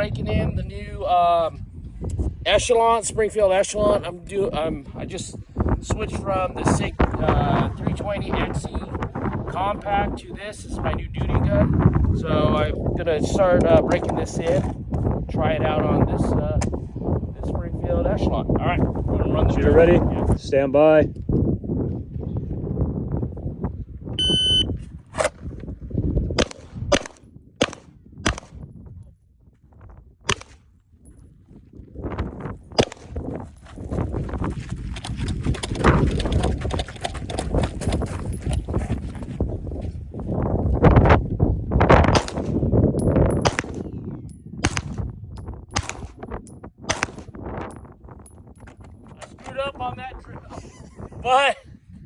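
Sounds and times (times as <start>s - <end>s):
electronic start beep: 24.2s - 24.7s
pistol shots: 26.4s - 28.6s, 30.3s - 30.6s, 32.8s - 33.2s, 42.1s - 42.6s, 43.4s - 44.0s, 44.6s - 45.0s, 45.8s - 46.2s, 46.9s - 47.4s
running and movement noise: 31.4s - 41.4s.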